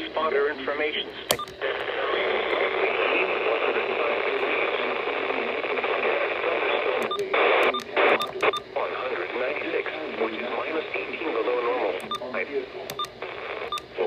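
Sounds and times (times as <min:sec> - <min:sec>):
radio static hiss: 0:00.0 - 0:14.0
sharp clicks: 0:01.3 - 0:01.6, 0:12.9 - 0:13.1.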